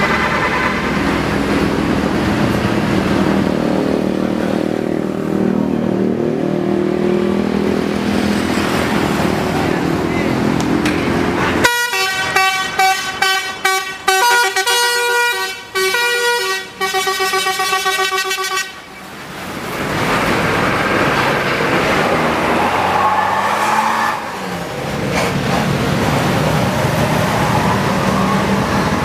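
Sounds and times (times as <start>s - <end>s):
bus engine and road noise: 0.0s - 29.0s
musical bus horn tune: 11.6s - 18.9s.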